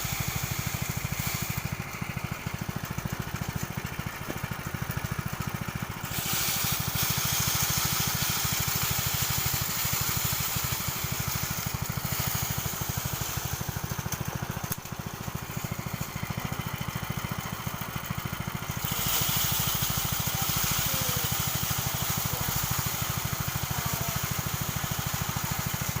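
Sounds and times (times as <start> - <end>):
rushing hiss of grain and straw: 0.0 - 2.2, 6.0 - 14.1, 18.8 - 25.9
thresher engine pulsing: 0.0 - 26.0.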